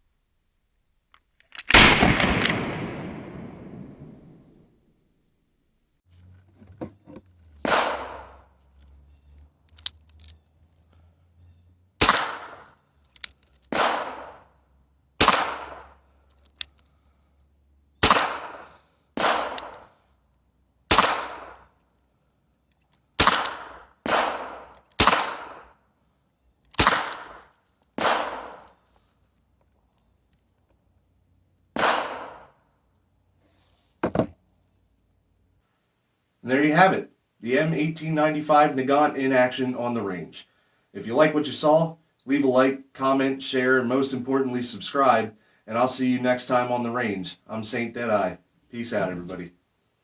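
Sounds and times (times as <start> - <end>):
revolver shots with echo: 7.6 - 8.4, 12.0 - 12.7, 13.7 - 14.5, 15.2 - 16.0, 18.0 - 19.9, 20.9 - 21.6, 23.2 - 25.7, 28.0 - 28.7, 31.8 - 32.5.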